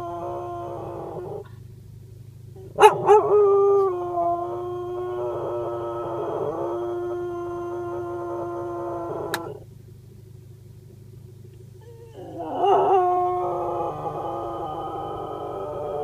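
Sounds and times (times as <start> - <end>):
dog howling: 0.0 - 1.5, 2.6 - 9.6, 11.8 - 16.0.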